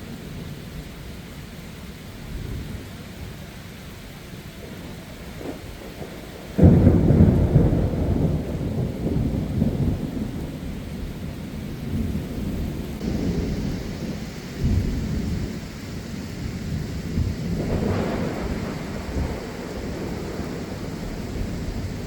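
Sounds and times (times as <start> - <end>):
heavy rain hiss: 0.0 - 22.0
thunder crash and rumble: 5.2 - 22.0.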